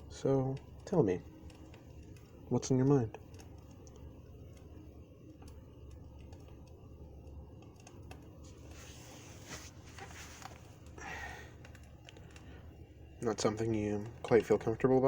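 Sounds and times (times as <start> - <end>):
campfire crackling: 0.0 - 15.0
soft breaths: 8.4 - 13.0.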